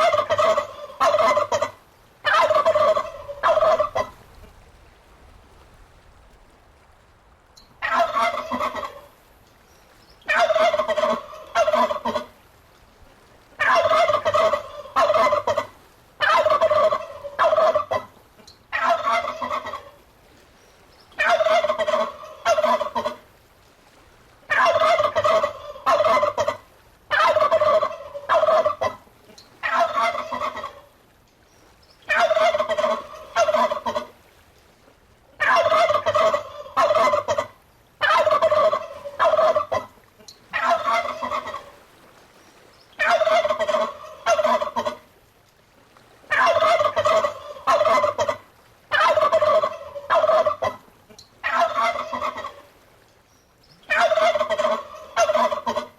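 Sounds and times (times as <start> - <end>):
turkey gobbling: 0.0 - 4.2, 7.8 - 9.1, 10.3 - 12.3, 13.6 - 20.0, 21.2 - 23.2, 24.5 - 29.0, 29.6 - 30.8, 32.1 - 34.1, 35.4 - 41.8, 43.0 - 45.0, 46.3 - 52.7, 53.9 - 55.9.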